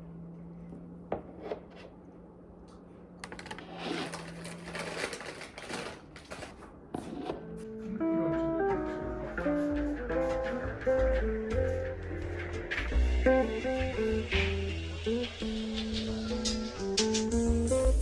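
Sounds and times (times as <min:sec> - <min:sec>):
dense rustling and clicking: 0:03.2 - 0:06.8.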